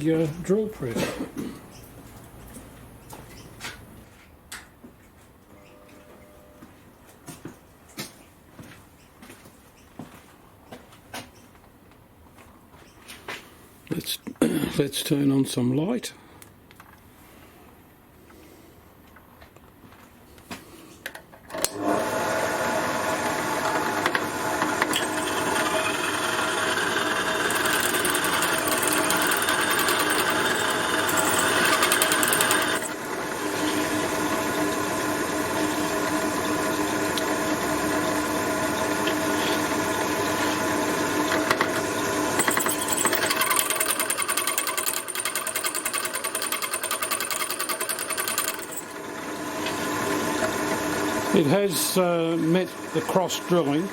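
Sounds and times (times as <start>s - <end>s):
drill press motor drilling metal: 21.5s - 53.9s.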